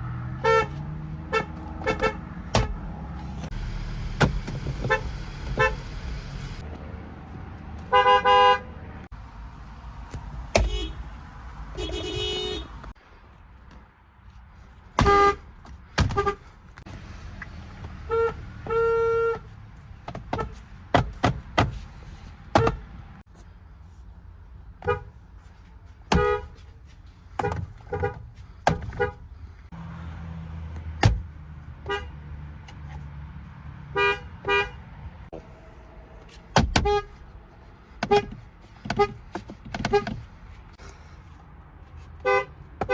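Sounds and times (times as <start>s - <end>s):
car horns honking: 0.3s - 3.1s, 4.2s - 6.0s, 7.8s - 9.0s, 10.5s - 12.9s, 15.0s - 16.5s, 18.0s - 19.5s, 22.5s - 22.9s, 24.8s - 25.2s, 26.1s - 26.7s, 27.4s - 29.3s, 31.8s - 32.2s, 33.9s - 34.9s, 36.5s - 37.3s, 38.0s - 40.3s, 42.2s - 42.9s
sharp clicks and knocks: 38.0s - 40.2s.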